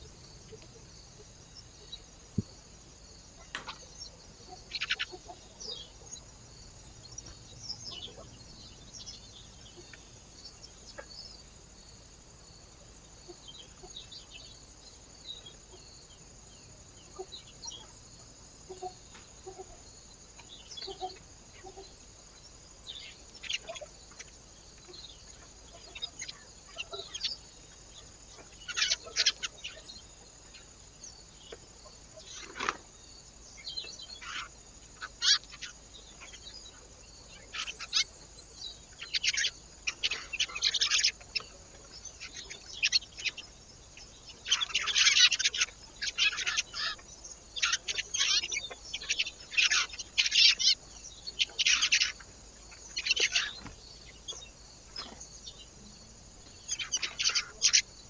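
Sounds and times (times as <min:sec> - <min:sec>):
birds chirping and calling: 0:03.4 - 0:06.3, 0:37.4 - 0:58.0.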